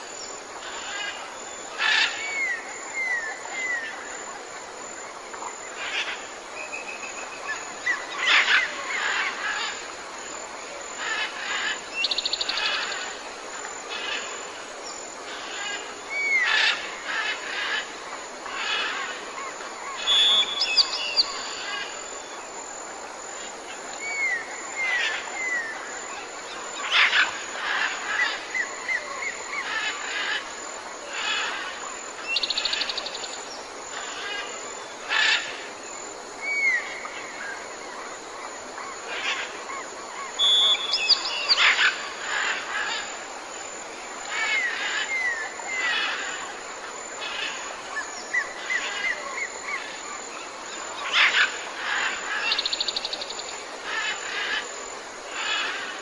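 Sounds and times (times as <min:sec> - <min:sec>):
steady background hiss: 0:00.0 - 0:56.0
bird trills: 0:40.4 - 0:42.0.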